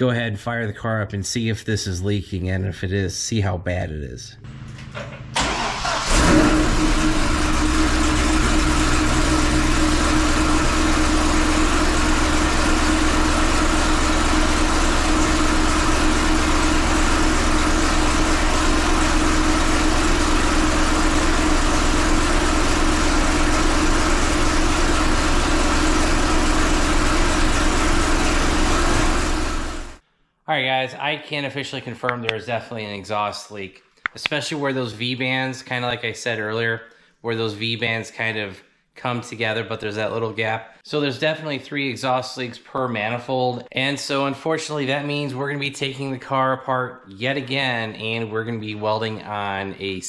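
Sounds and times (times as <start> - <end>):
car engine starting and idling: 4.5 - 30.0
exhaust leak: 5.3 - 30.0.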